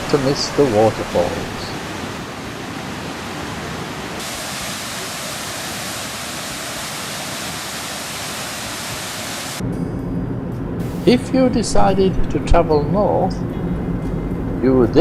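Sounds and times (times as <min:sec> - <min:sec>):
waterfall rushing: 0:00.0 - 0:09.6, 0:10.8 - 0:12.1.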